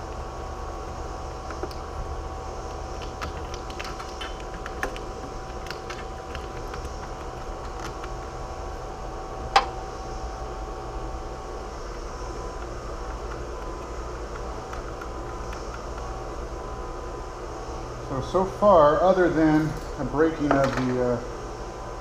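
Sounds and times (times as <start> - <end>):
steady hum: 0.0 - 22.0
hand tools clicking and tapping: 2.6 - 8.4, 12.3 - 16.2.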